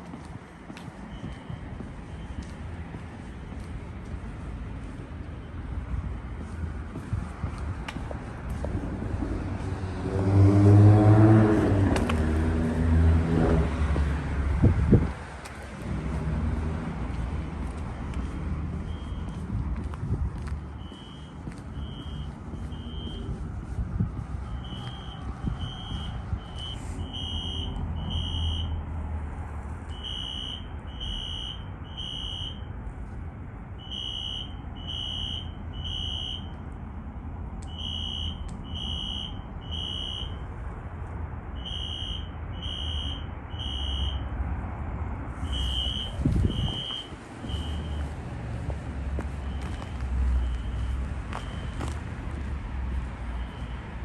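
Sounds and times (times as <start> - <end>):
steady low rumble: 12.0 - 27.1
fire alarm horn blasts: 18.9 - 19.4, 20.8 - 23.4, 24.4 - 28.8, 29.9 - 32.7, 33.8 - 36.6, 37.7 - 40.5, 41.6 - 44.3, 45.4 - 48.1, 49.4 - 51.8, 53.4 - 53.8.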